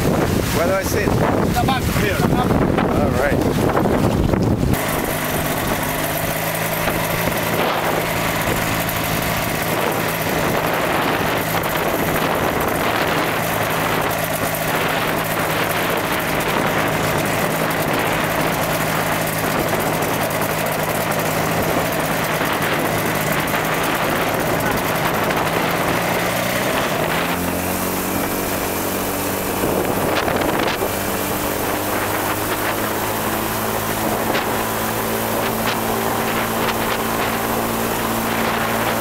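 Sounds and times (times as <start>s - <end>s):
engine and propeller running: 0.0s - 39.0s.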